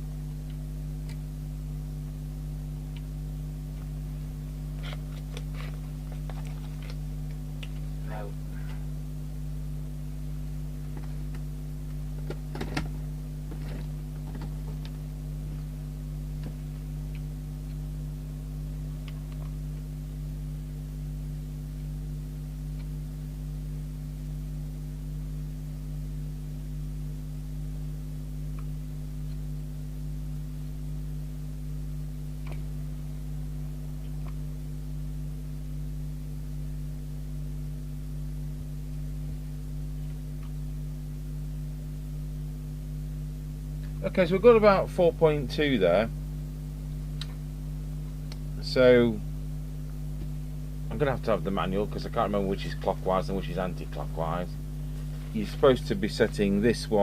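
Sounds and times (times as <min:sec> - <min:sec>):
electrical hum: 0:00.0 - 0:57.0.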